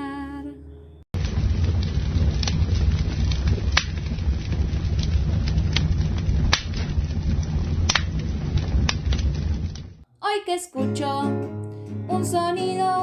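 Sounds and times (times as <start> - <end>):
fire pops and cracks: 1.2 - 10.0
fire roaring: 1.2 - 10.0.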